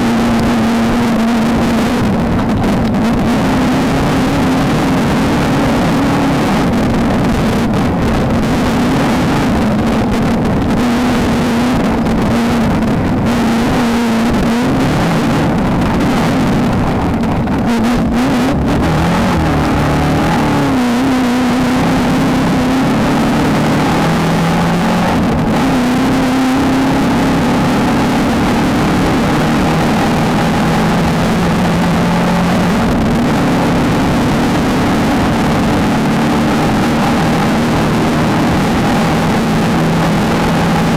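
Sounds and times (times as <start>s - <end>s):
race car engine under load: 0.0s - 40.9s
steady rush of noise: 0.0s - 40.9s.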